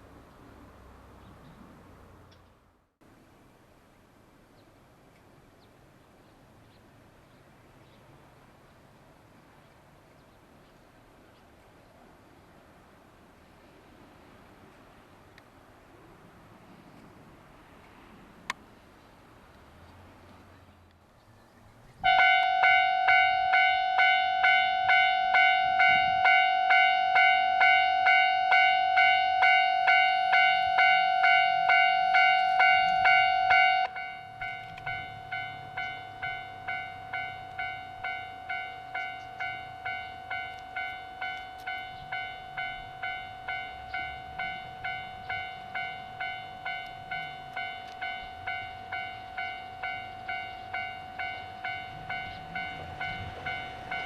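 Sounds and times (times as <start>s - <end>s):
level crossing alarm bell: 22.1s - 54.0s.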